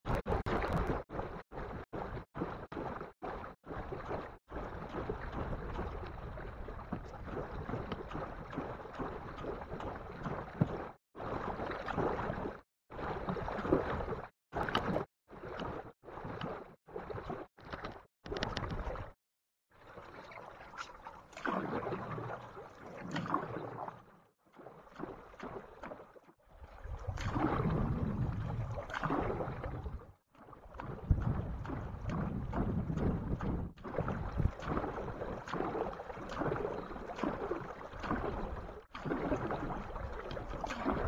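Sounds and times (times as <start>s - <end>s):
water: 0.0s - 41.0s
wind: 0.0s - 41.0s.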